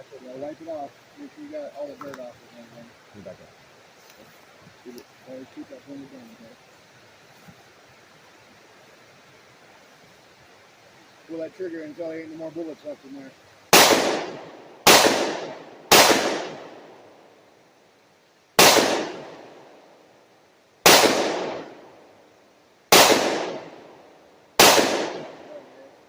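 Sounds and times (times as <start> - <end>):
gunshots with echo: 13.7 - 16.9, 18.6 - 19.5, 20.9 - 21.8, 22.9 - 23.8, 24.6 - 25.6.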